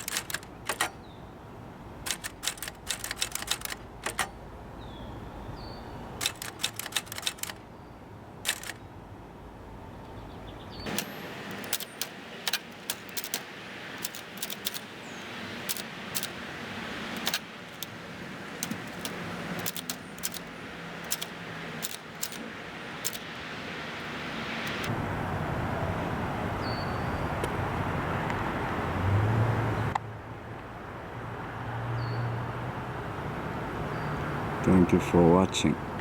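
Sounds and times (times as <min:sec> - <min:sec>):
typewriter key strikes: 0:00.0 - 0:01.0, 0:02.0 - 0:04.3, 0:06.2 - 0:07.6, 0:08.5 - 0:08.8, 0:10.9 - 0:24.9.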